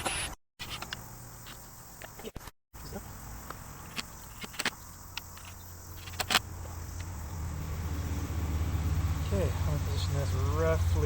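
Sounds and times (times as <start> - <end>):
plastic and metal parts clicking: 3.9 - 6.4
low engine hum: 5.7 - 11.0.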